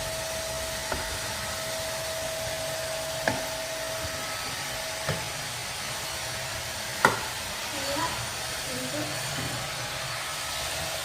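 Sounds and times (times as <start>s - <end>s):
thin steady whine: 0.0s - 11.0s
vacuum cleaner running: 0.0s - 11.0s.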